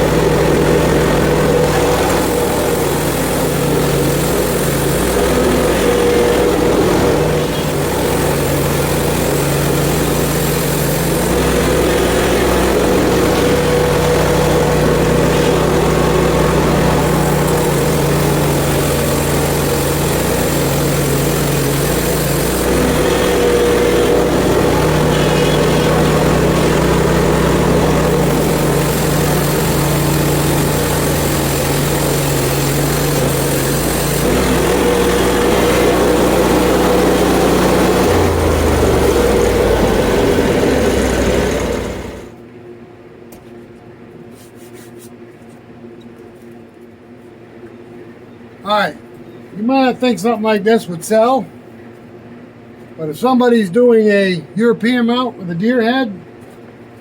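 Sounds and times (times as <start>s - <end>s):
band blade cutting log: 0.0s - 42.3s
bandsaw mill engine running: 0.0s - 42.4s.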